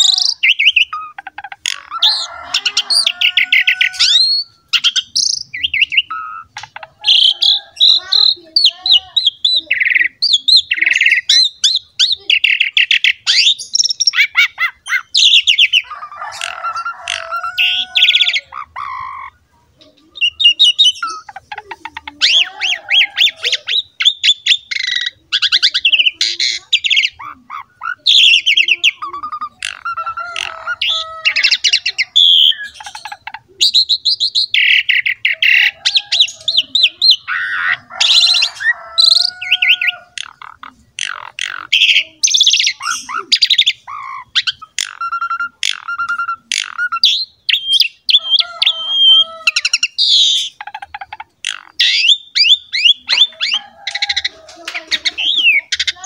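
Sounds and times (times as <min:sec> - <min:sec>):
starling singing: 0:00.0 - 0:56.0.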